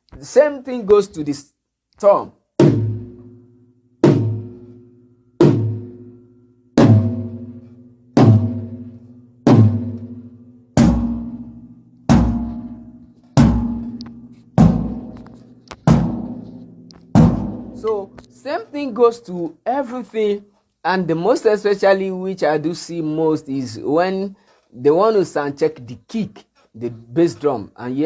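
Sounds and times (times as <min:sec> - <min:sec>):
tom-tom drum hits: 0:02.6 - 0:03.4, 0:04.0 - 0:04.7, 0:05.4 - 0:06.0, 0:06.8 - 0:07.6, 0:08.2 - 0:10.2, 0:10.8 - 0:18.3.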